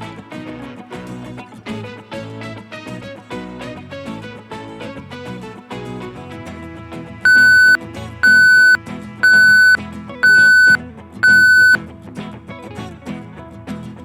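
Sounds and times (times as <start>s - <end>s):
electronic timer beeps: 7.3s - 11.8s.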